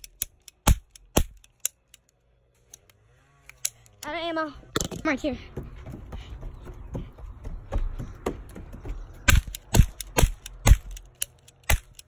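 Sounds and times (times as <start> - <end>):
toy cap gun cracks: 0.0 - 4.1, 9.3 - 12.0.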